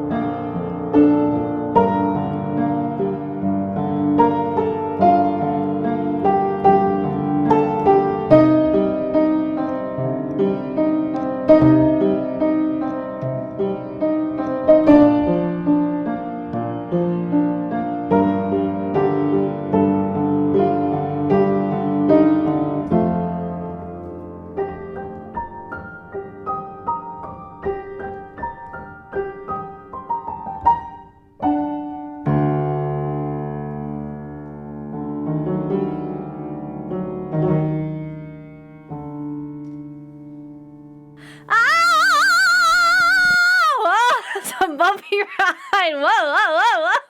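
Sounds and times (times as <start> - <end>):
solo piano music: 0.0 - 41.7.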